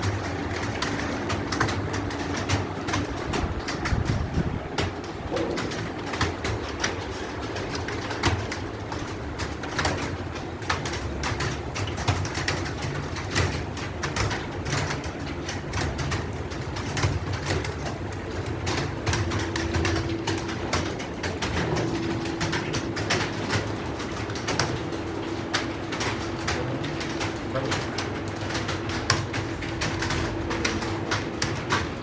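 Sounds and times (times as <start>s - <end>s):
low steady hum: 13.1s - 32.0s.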